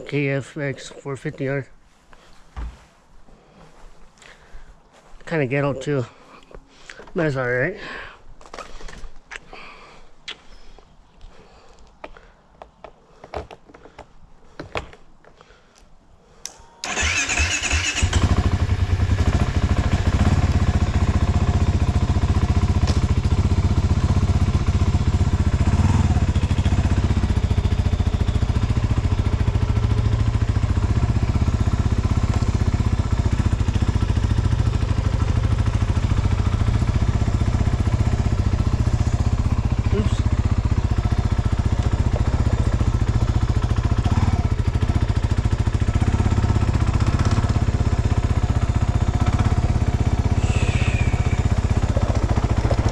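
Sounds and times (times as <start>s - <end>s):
atv engine idling: 16.8s - 52.9s.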